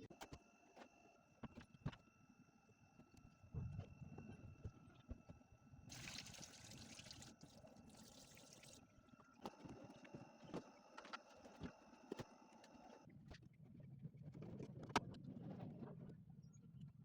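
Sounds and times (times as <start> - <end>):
water pouring: 5.9 - 8.8.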